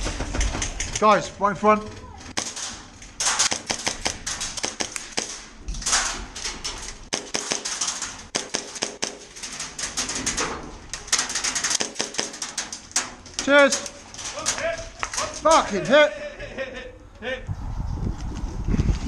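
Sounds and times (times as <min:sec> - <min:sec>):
airsoft guns firing: 0:02.3 - 0:06.2, 0:07.1 - 0:12.6.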